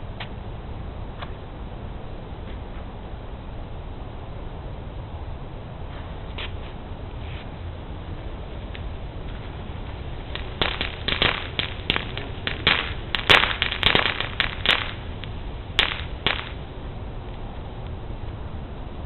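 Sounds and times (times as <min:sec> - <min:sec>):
firecrackers cracking and popping: 0:08.6 - 0:16.7.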